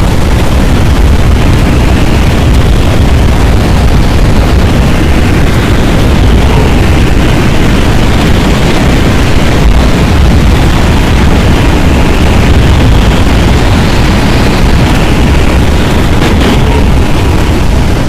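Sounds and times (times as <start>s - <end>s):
strong wind rushing: 0.0s - 18.0s.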